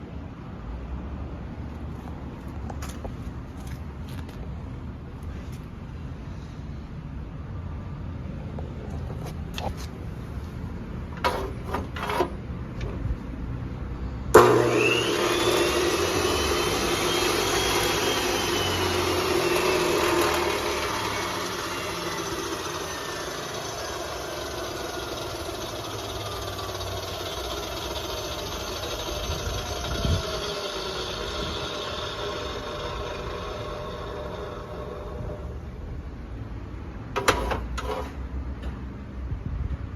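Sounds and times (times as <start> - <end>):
cut-off saw motor whining: 14.3 - 35.7.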